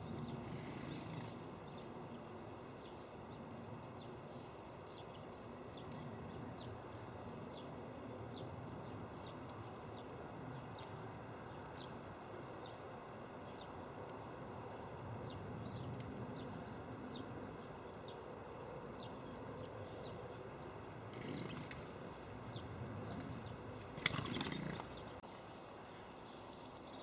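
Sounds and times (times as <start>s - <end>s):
low outdoor rumble: 0.0s - 25.2s
small birds chirping: 18.9s - 25.2s.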